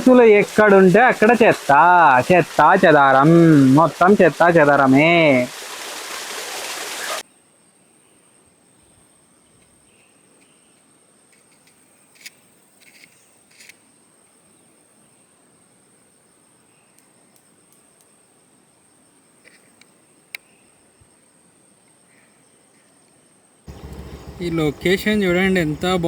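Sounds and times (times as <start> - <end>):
loud rushing hiss: 0.0 - 7.2, 23.7 - 26.0
faint chirps: 23.7 - 26.0
high-pitched insect drone: 23.7 - 26.0.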